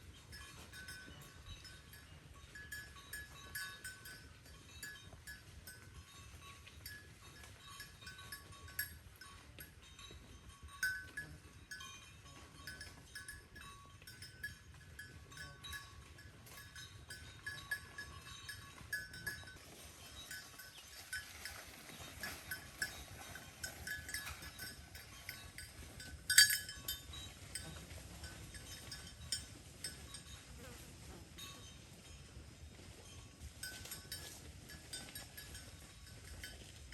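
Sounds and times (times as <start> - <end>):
cattle chewing hay: 16.6 - 30.3.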